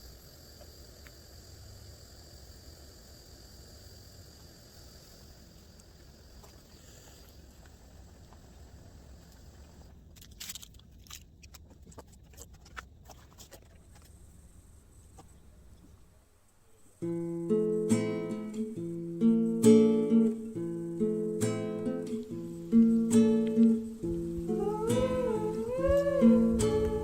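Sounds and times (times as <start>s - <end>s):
faint outdoor background noise: 0.0s - 27.0s
strummed acoustic guitar: 17.0s - 27.0s.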